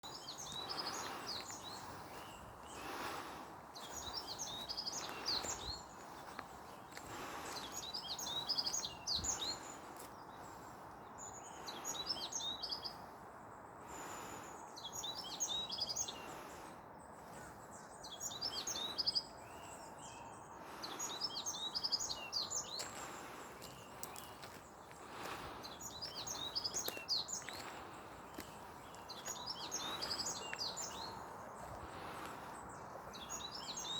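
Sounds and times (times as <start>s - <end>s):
songbird singing: 0.0s - 33.9s.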